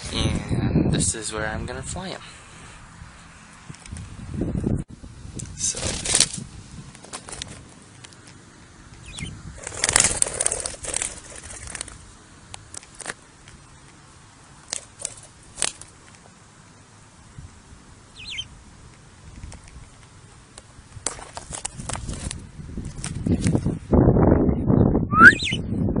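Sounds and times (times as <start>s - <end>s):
bird wings flapping: 5.6s - 6.4s, 9.2s - 12.0s, 14.7s - 16.0s
bird chirp: 9.0s - 9.4s, 18.1s - 18.5s, 24.5s - 25.7s.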